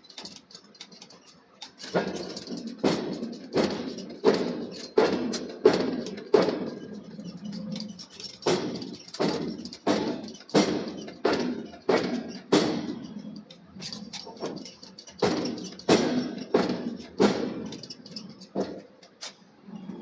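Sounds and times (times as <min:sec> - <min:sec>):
hammer striking hot steel: 0:01.9 - 0:07.1, 0:08.4 - 0:13.4, 0:14.4 - 0:18.8.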